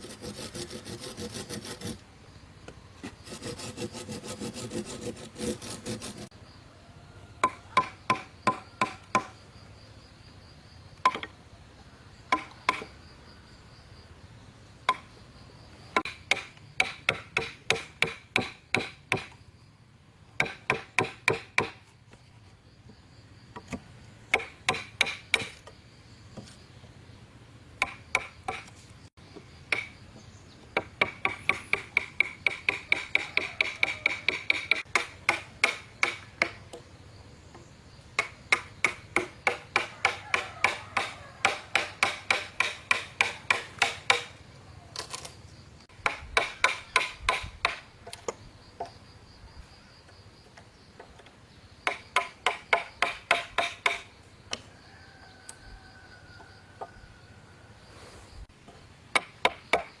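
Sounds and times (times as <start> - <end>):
rapid hand tool strikes: 3.3 - 6.3, 7.4 - 9.3, 16.0 - 19.4, 20.4 - 21.8, 24.3 - 25.6, 27.8 - 28.7, 30.8 - 36.6, 38.2 - 44.3, 46.0 - 47.8, 51.9 - 54.1.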